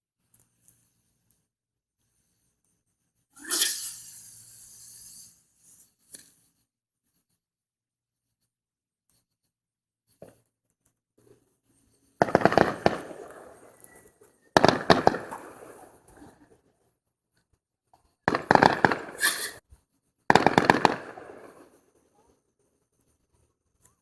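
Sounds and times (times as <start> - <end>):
fireworks crackling pops: 12.1 - 16.5, 18.2 - 19.7, 20.3 - 22.1.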